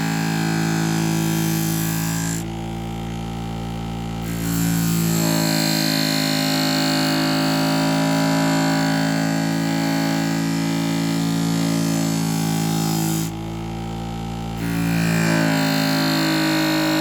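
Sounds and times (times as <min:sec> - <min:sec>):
knife grinder motor hum: 0:00.0 - 0:17.0.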